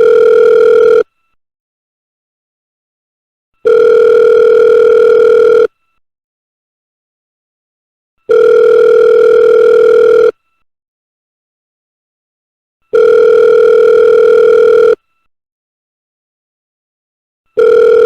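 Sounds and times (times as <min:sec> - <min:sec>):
electronic telephone ringing: 0:00.0 - 0:01.1, 0:03.6 - 0:05.7, 0:08.3 - 0:10.4, 0:12.9 - 0:15.0, 0:17.6 - 0:18.0.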